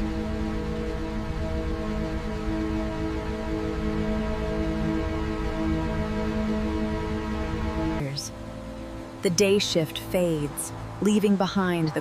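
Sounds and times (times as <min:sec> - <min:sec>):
low rumble: 0:00.0 - 0:09.1
brooding sustained music tones: 0:00.0 - 0:12.0.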